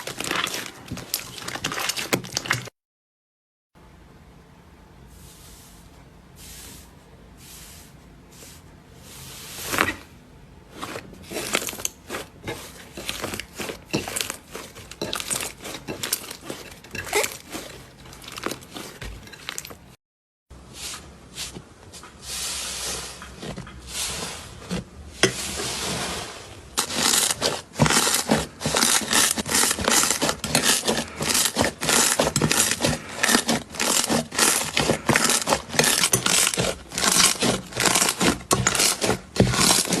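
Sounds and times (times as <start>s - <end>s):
slime popping and crackling: 0.0s - 2.7s, 26.8s - 40.0s.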